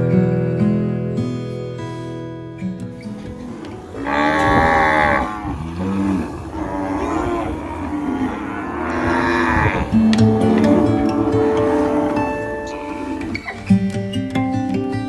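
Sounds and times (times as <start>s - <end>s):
cattle mooing: 3.4s - 13.6s.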